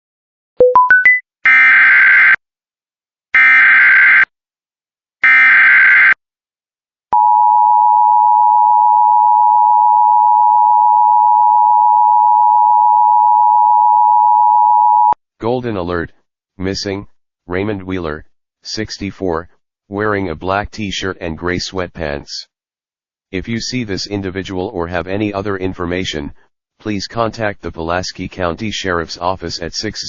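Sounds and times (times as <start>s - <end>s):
rising run of beeps: 0.6s - 1.2s
two-tone alert signal: 0.6s - 1.2s.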